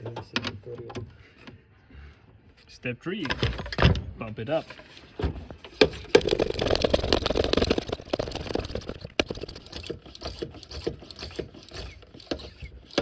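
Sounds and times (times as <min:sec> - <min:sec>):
brake bleeder pump clattering: 0:05.7 - 0:13.0.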